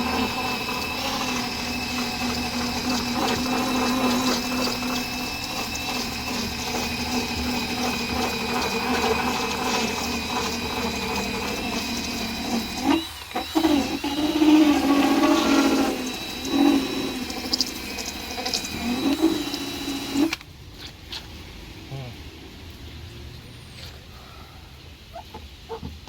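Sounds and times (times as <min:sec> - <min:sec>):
power drill whining: 0:00.0 - 0:20.4.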